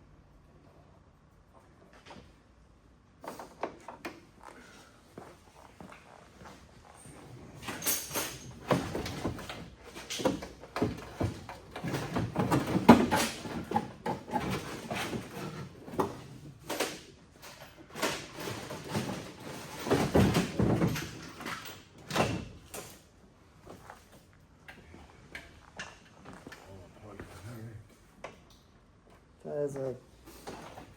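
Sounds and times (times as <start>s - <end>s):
hand tools and car parts clattering: 7.1s - 23.1s.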